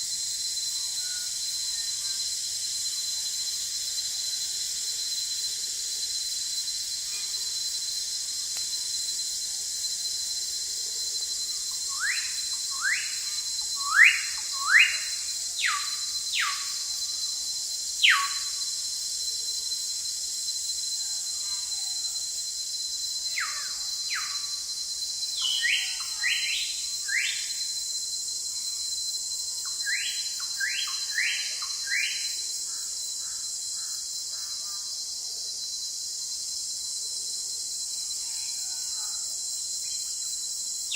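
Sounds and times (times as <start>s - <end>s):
insect drone: 0.0s - 40.9s
bird whistling calls: 11.9s - 16.8s, 18.0s - 18.5s, 25.4s - 27.5s.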